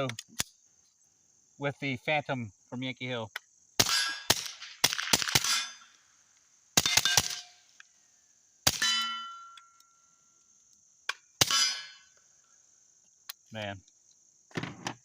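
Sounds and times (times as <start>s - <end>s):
pistol shots: 3.8s - 5.8s, 6.8s - 7.5s, 8.7s - 9.0s
bullets ringing on steel target: 6.8s - 7.5s, 8.7s - 9.7s, 11.4s - 12.1s.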